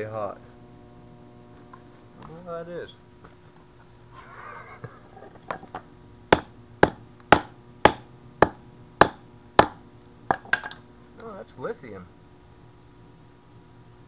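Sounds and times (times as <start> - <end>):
hammer striking battery on pavement: 6.4 - 10.8.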